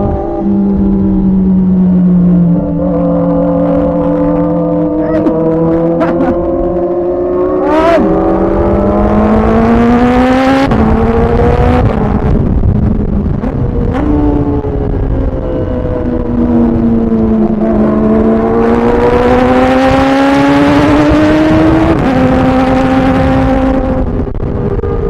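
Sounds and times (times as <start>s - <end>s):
motorcycle engine accelerating: 0.0s - 25.0s
wind: 0.0s - 25.0s.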